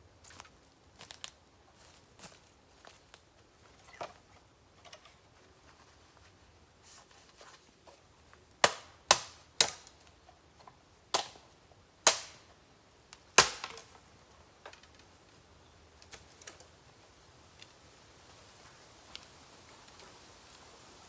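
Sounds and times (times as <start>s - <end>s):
bamboo bursting with loud pops: 8.6s - 10.1s, 11.1s - 14.1s.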